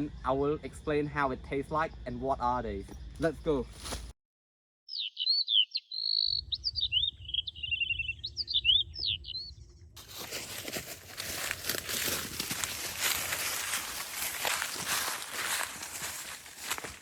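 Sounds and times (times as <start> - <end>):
songbird singing: 0.0 - 4.1, 4.9 - 10.0, 11.0 - 17.0
footsteps through dry leaves: 3.7 - 4.1, 10.0 - 17.0.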